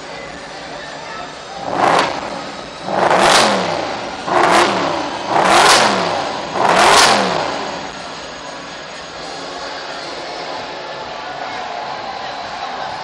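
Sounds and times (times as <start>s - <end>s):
car engine idling: 0.0s - 10.6s
car engine revving: 1.5s - 8.8s.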